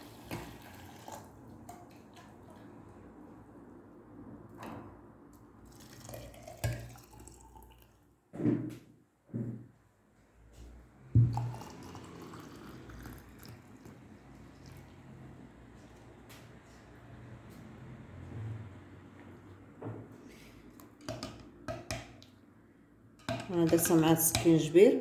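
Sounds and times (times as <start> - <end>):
water pouring and dripping: 5.6 - 8.0, 11.2 - 15.3.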